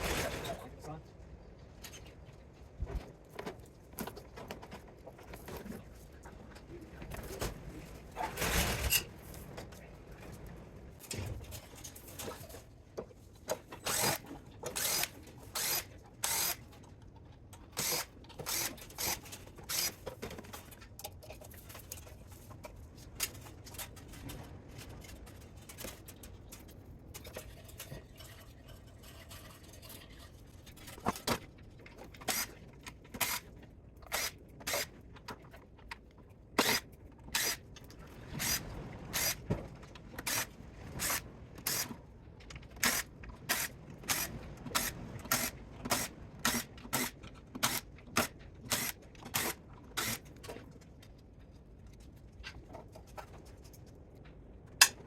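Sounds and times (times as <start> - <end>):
hand tools scraping and clicking on metal: 11.1 - 50.8.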